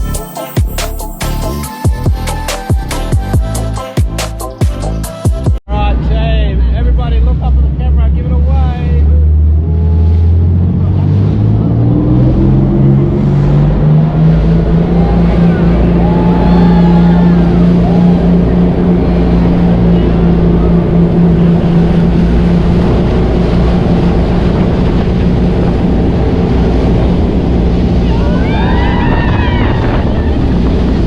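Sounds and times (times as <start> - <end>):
boat engine droning: 0.0 - 31.0
wind on microphone: 9.4 - 31.0.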